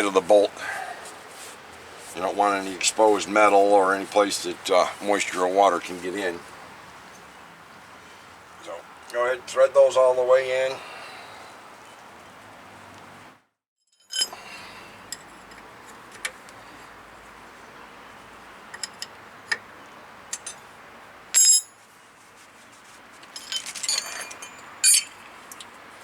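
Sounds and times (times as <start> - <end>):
metallic clinks of tools: 14.0 - 14.4, 21.4 - 21.8, 23.4 - 25.2
metal clatter: 23.3 - 25.2.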